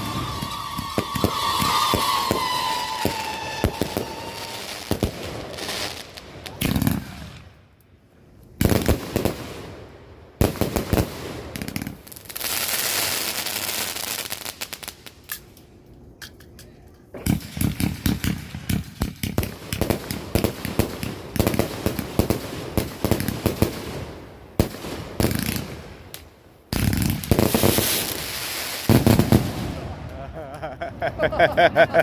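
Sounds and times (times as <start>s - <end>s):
firework whistle: 0.0s - 5.0s
loud firework bangs: 0.0s - 7.4s, 26.7s - 30.0s
firework crackling: 0.0s - 7.5s, 10.4s - 15.4s, 17.2s - 30.4s.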